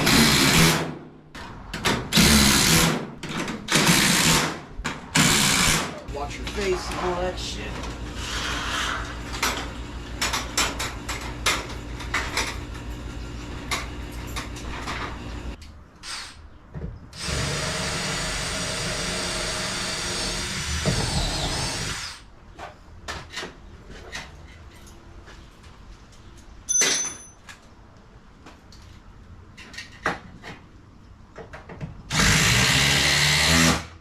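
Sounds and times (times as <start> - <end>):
power drill running: 17.2 - 22.2, 32.1 - 33.8.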